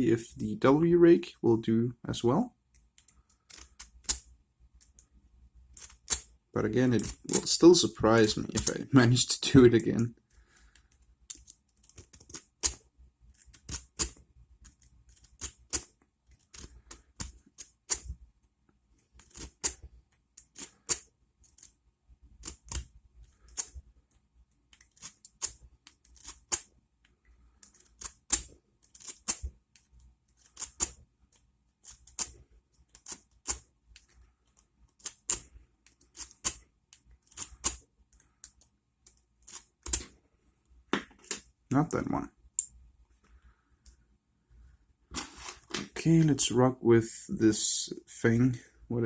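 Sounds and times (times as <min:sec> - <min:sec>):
lock pick clicking in padlock: 0:35.0 - 0:35.5.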